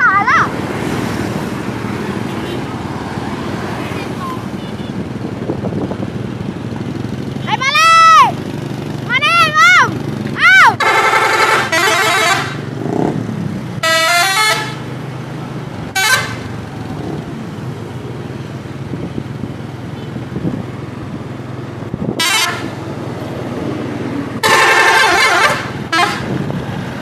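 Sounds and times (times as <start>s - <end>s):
engine hum: 0.0s - 27.0s
multi-note bus horn: 10.8s - 12.7s, 13.8s - 14.9s, 15.9s - 16.5s, 22.2s - 22.8s, 24.4s - 26.4s.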